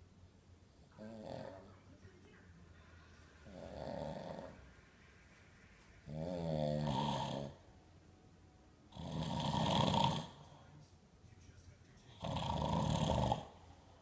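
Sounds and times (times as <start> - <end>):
man snoring: 3.5 - 4.6, 6.1 - 7.6, 8.9 - 10.6, 12.1 - 13.7.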